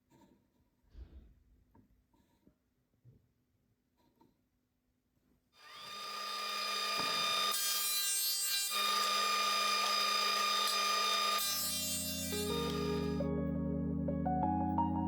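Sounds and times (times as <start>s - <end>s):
electric power tool whining: 5.6s - 13.2s.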